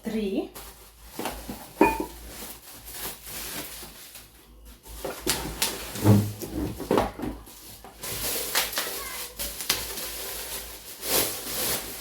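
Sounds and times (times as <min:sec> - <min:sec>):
rustling: 0:00.5 - 0:12.0
dishes clicking and knocking: 0:01.8 - 0:02.2.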